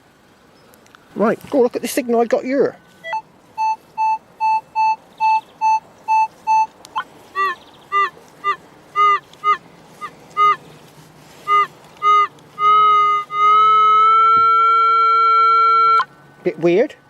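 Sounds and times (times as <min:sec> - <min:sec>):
metal detector beeping: 0:02.8 - 0:10.6, 0:11.4 - 0:16.1.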